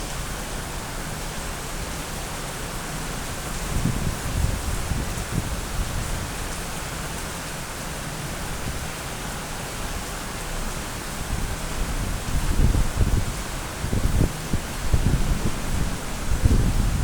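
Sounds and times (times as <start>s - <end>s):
steady rain: 0.0s - 17.0s
wind on microphone: 3.6s - 6.5s, 11.2s - 17.0s.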